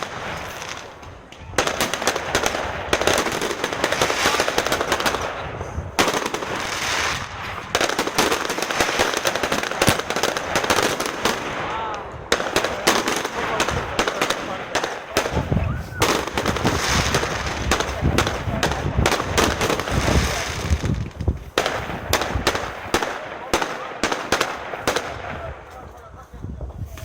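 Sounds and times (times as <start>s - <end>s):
fireworks crackling and popping: 0.0s - 27.0s.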